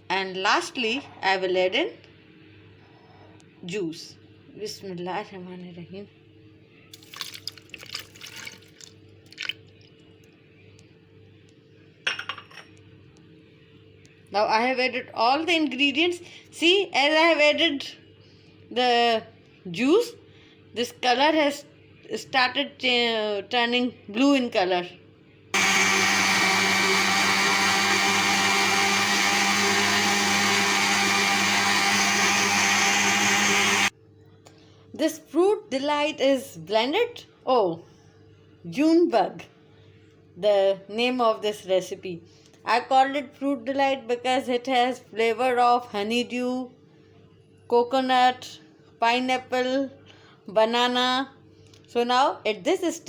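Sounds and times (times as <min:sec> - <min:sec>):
juice pouring into blender jar: 0:07.0 - 0:09.6, 0:25.6 - 0:33.9.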